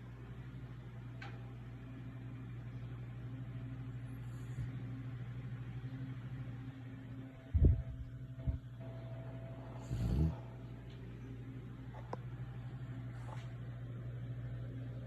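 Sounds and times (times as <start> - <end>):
dog snoring: 9.8 - 10.6.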